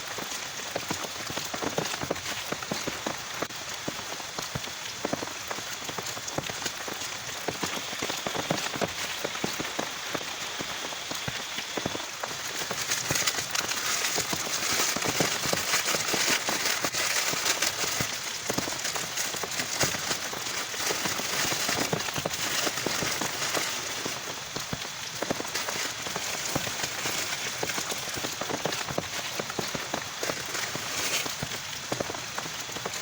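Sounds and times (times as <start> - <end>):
heavy rain: 0.0 - 33.0
raindrops striking a surface: 0.0 - 33.0.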